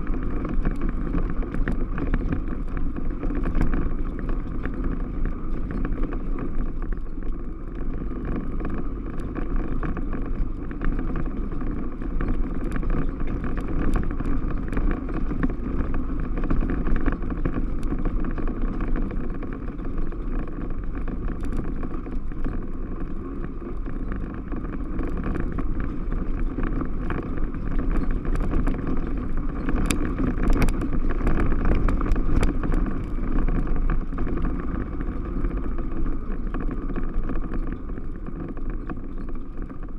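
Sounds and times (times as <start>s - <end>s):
vehicle clicks and knocks: 23.8s - 34.9s.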